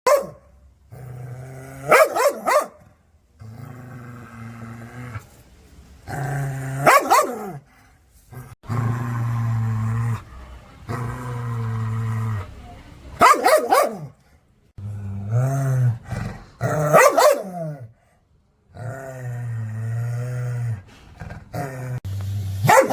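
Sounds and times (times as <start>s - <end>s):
dog barking sharply: 0.0s - 0.4s, 1.9s - 2.8s, 6.9s - 7.4s, 13.2s - 14.1s, 16.9s - 17.5s, 22.6s - 22.9s
dog growling: 8.3s - 12.6s, 18.7s - 22.2s.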